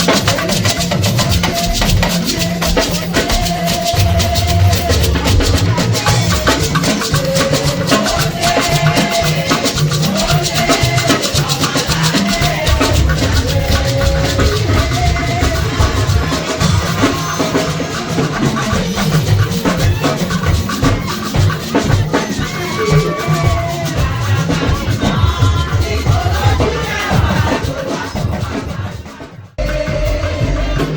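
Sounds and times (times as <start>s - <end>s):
shakers: 0.0s - 29.3s
busy drum kit: 0.0s - 30.9s
strong bass: 3.9s - 6.9s, 12.4s - 17.2s.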